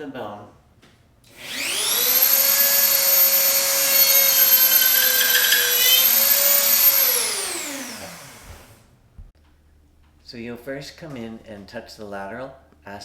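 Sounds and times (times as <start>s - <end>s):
power tool motor whining: 1.3s - 8.8s.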